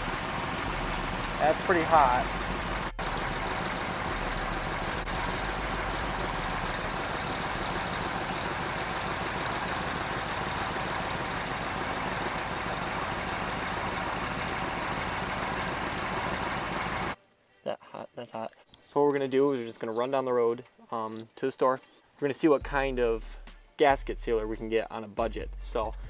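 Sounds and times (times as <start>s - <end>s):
exhaust leak blowing: 0.0s - 17.2s
pickup engine idling: 0.0s - 17.2s.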